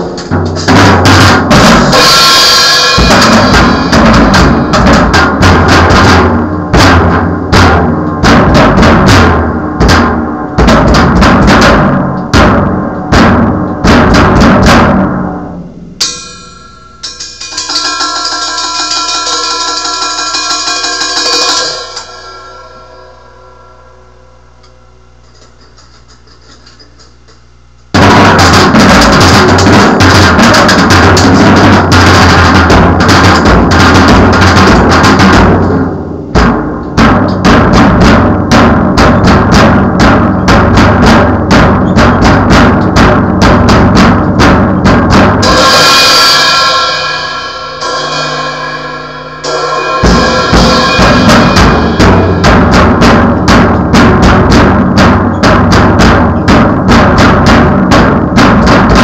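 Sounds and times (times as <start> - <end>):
drum kit played fast: 0.0 - 23.9, 27.9 - 59.0
ringing cymbal: 1.6 - 5.4, 15.2 - 27.0, 44.8 - 54.0.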